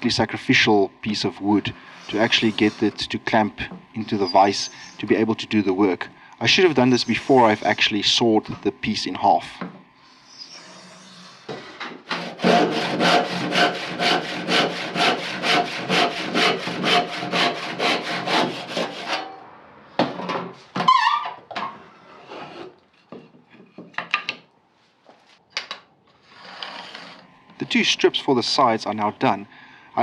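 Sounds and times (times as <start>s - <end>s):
hand tool strokes on wood: 1.8s - 3.4s
short scrapes: 2.0s - 3.0s.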